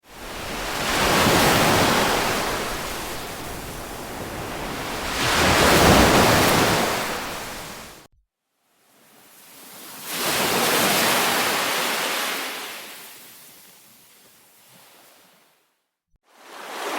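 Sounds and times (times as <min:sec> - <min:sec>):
ocean waves breaking: 0:00.0 - 0:08.1, 0:09.9 - 0:13.0, 0:16.3 - 0:16.9.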